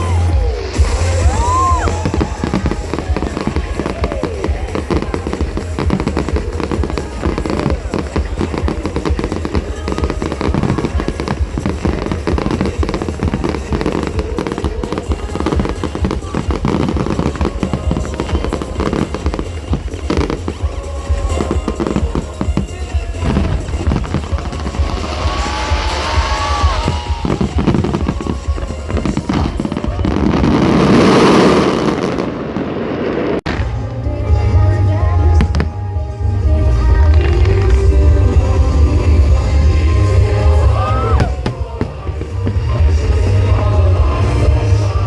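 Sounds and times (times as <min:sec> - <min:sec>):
fireworks bangs and crackles: 0:00.0 - 0:45.0
deep rumble: 0:32.2 - 0:45.0.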